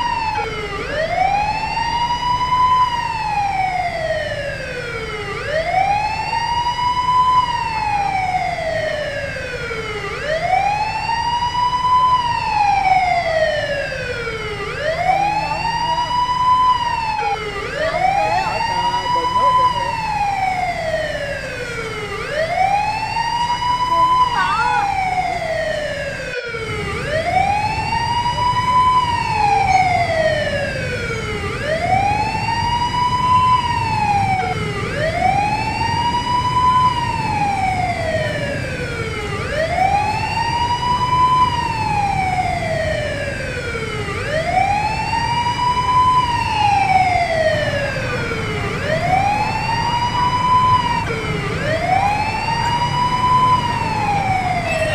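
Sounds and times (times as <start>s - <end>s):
fire truck siren wailing: 0.0s - 54.9s.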